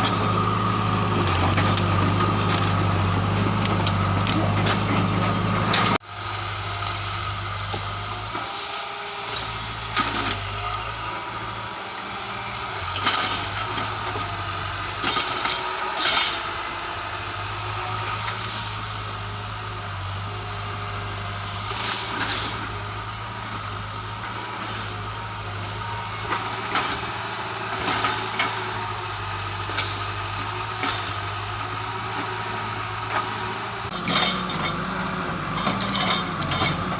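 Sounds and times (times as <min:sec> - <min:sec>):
wood cracking and splitting: 0:00.0 - 0:06.0
diesel engine running: 0:00.0 - 0:36.9.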